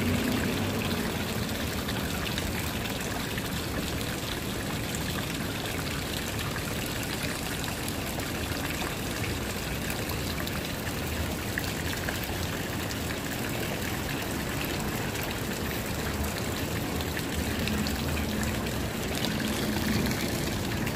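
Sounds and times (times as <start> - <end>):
fountain water splashing: 0.0 - 20.9.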